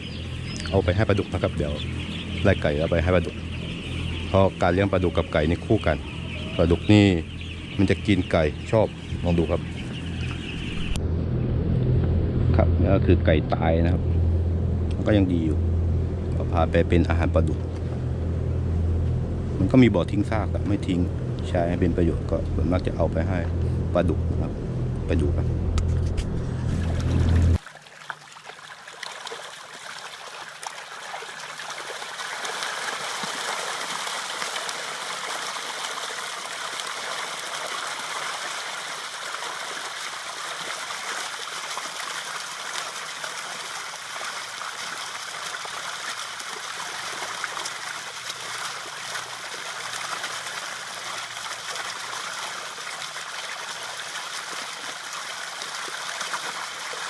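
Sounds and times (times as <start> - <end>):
running water rushing: 0.0 - 11.0, 26.3 - 57.0.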